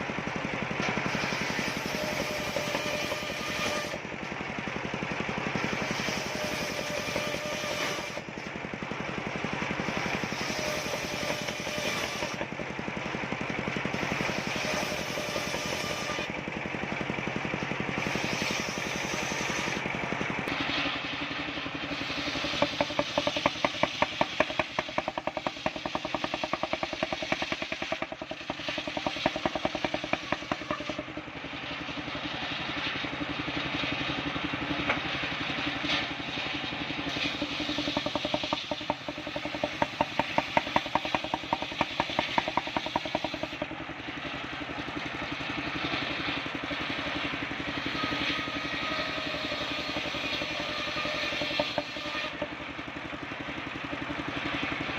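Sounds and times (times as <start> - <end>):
circular sawmill cutting wood: 0.0 - 54.9
fast even rattle: 37.2 - 43.7.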